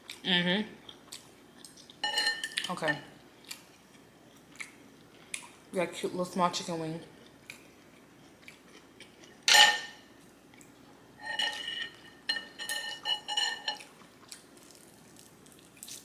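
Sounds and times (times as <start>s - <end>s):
tableware clinking: 2.0s - 3.0s, 9.5s - 10.0s, 11.2s - 13.9s.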